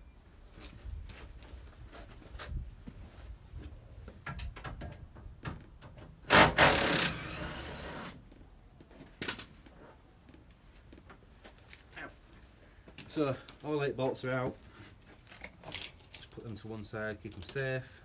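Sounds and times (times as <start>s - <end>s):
loud rasping burst: 6.3s - 8.2s.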